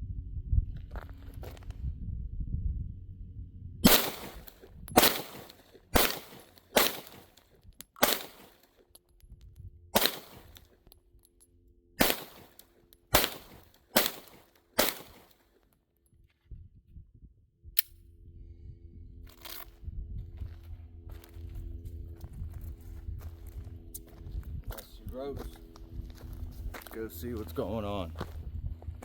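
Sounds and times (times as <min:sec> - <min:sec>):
pistol shots: 0:03.8 - 0:07.4, 0:08.0 - 0:08.7, 0:10.0 - 0:10.6, 0:12.0 - 0:15.4.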